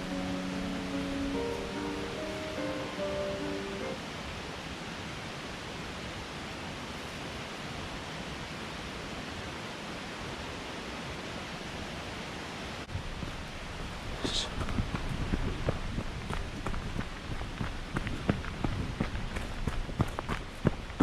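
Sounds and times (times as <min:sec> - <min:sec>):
waterfall rushing: 0:00.0 - 0:12.9.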